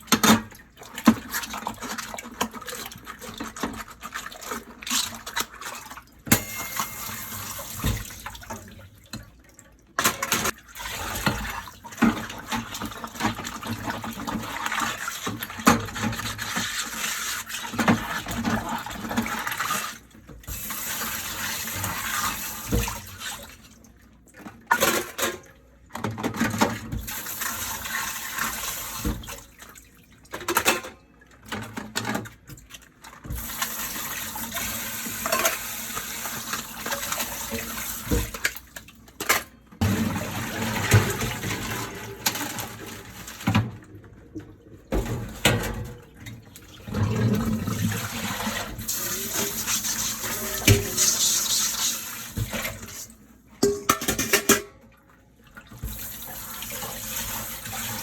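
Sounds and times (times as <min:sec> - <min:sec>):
tap water running: 0:00.0 - 0:23.8, 0:26.4 - 0:29.9, 0:33.2 - 0:38.9, 0:39.8 - 0:54.7, 0:55.4 - 0:58.0
dishes clattering: 0:53.6 - 0:54.8.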